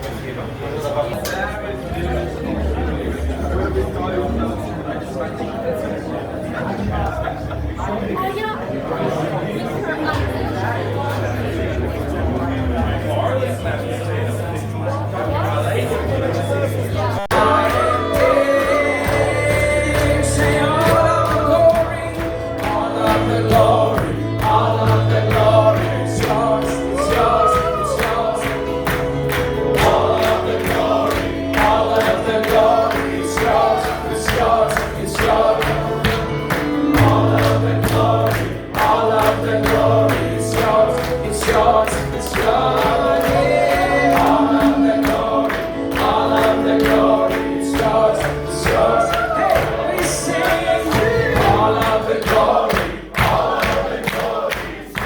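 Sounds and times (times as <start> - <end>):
choir singing gospel music: 9.3 - 55.0
sustained bass: 10.1 - 53.9
steady beat: 17.3 - 54.4.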